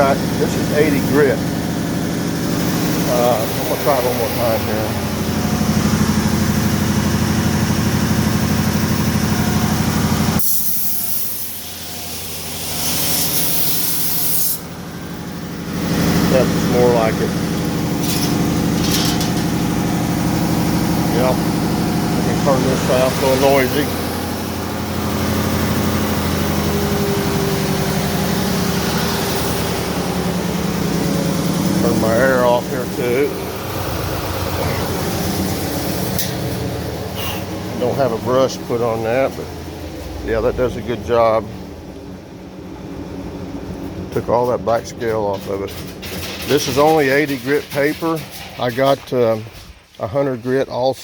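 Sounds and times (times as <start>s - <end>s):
belt sander sanding metal: 0.0s - 39.6s, 43.8s - 49.5s
compressed air hiss: 10.4s - 14.7s.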